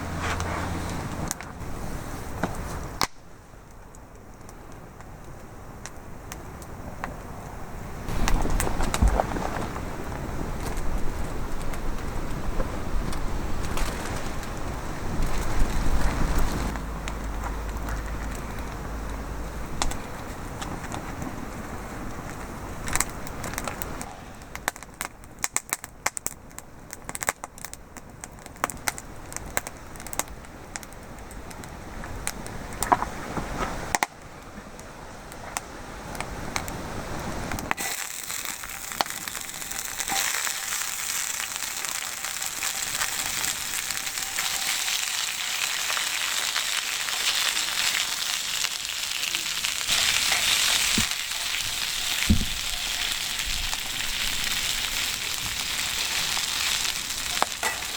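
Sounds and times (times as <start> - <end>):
wood fire crackling and popping: 0.0 - 57.9
food sizzling in frying pan: 37.8 - 57.9.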